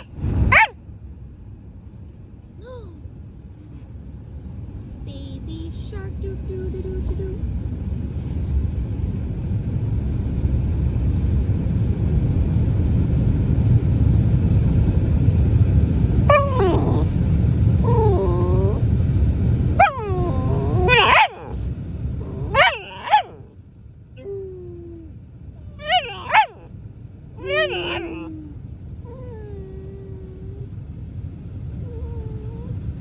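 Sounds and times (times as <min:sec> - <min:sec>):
puppy grumbling: 0:00.0 - 0:00.7, 0:16.2 - 0:19.0, 0:19.6 - 0:23.5, 0:25.6 - 0:26.7, 0:27.4 - 0:29.7
puppy whiny calls: 0:00.0 - 0:00.7, 0:16.3 - 0:18.9, 0:19.6 - 0:23.5, 0:25.6 - 0:26.7, 0:27.4 - 0:28.5.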